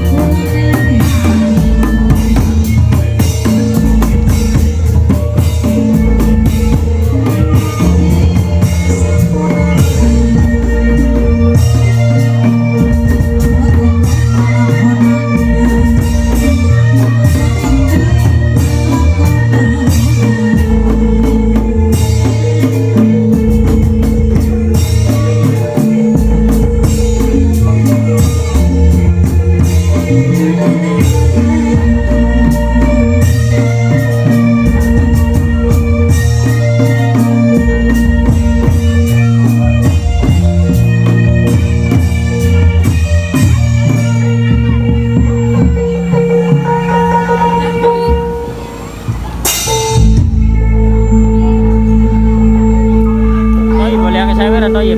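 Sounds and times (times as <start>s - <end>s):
bass line: 0.0s - 54.9s
drums: 0.0s - 54.9s
long held tone: 43.9s - 54.9s.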